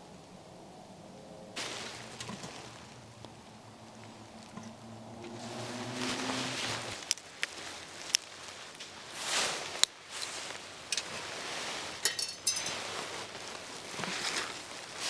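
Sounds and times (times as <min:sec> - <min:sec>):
soft rustling: 0:01.6 - 0:15.0
wood fire clicks and crackles: 0:06.9 - 0:15.0
metallic clink of cookware: 0:12.0 - 0:12.9.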